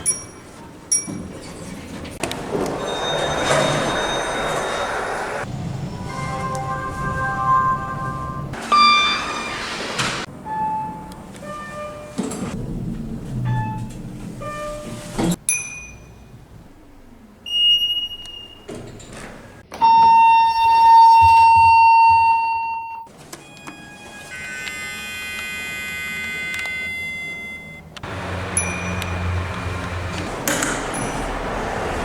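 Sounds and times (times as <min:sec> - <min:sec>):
layered high-pitched tones: 0:04.5 - 0:09.5
short chime tones: 0:06.0 - 0:09.6
loud steady buzzer tone: 0:23.4 - 0:29.8.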